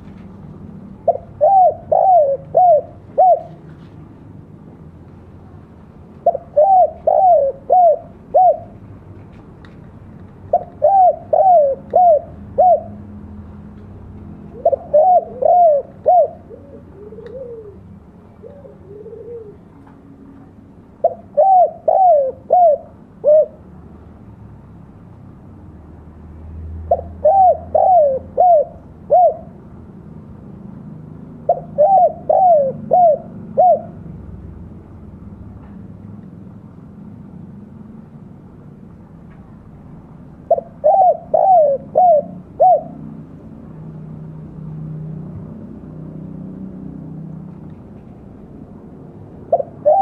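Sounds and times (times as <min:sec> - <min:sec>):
dove cooing: 0:01.0 - 0:03.8, 0:06.2 - 0:08.8, 0:10.5 - 0:13.2, 0:14.4 - 0:19.8, 0:21.0 - 0:23.6, 0:26.9 - 0:29.6, 0:31.4 - 0:34.0, 0:40.4 - 0:43.1, 0:49.5 - 0:50.0.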